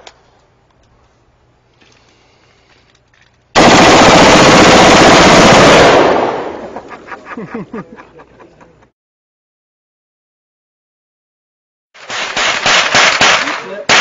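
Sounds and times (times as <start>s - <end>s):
automatic gunfire burst: 3.6s - 6.7s, 12.0s - 14.0s.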